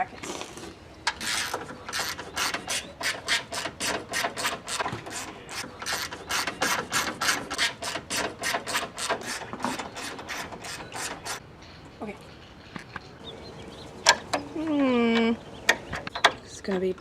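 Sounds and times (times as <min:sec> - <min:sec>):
ratchet wrench clicking: 0:01.1 - 0:11.4.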